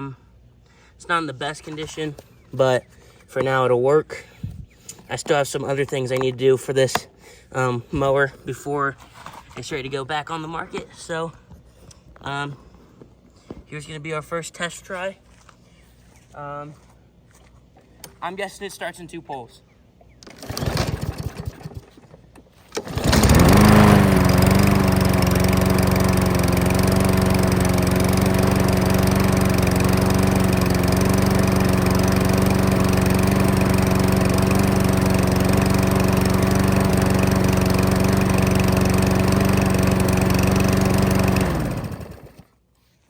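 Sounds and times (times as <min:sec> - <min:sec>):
lawn mower engine running: 0:20.2 - 0:42.5
starter cord pulling: 0:20.2 - 0:42.5.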